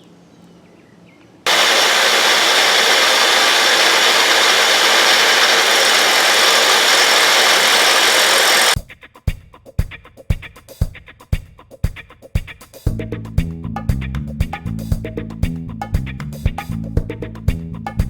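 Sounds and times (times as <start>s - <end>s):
angle grinder grinding: 1.5s - 8.8s
music with drum beat: 8.8s - 18.0s.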